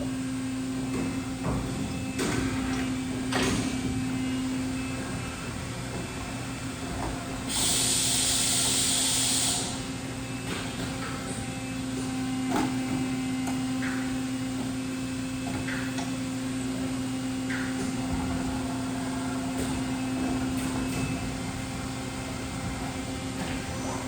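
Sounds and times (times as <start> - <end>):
industrial machine hum: 0.0 - 24.0
loud hiss: 7.5 - 9.8.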